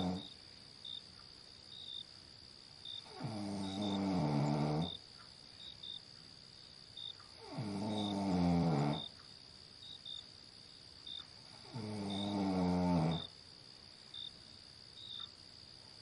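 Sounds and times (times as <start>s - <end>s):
person snoring: 0.0s - 0.3s, 3.1s - 5.0s, 7.4s - 9.1s, 11.6s - 13.3s
insects chirping: 0.0s - 16.0s.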